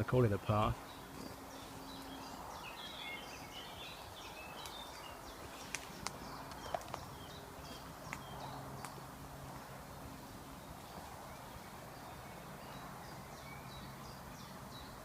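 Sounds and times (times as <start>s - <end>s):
birds chirping: 0.0s - 15.0s
footsteps through undergrowth: 0.8s - 2.4s
twigs snapping underfoot: 4.6s - 7.1s, 7.7s - 9.0s.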